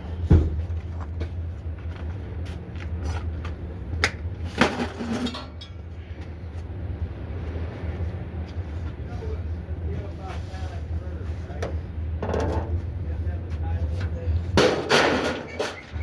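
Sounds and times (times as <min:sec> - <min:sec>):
low engine hum: 0:00.0 - 0:14.8
scrap metal clanking: 0:04.5 - 0:05.8, 0:14.6 - 0:16.0.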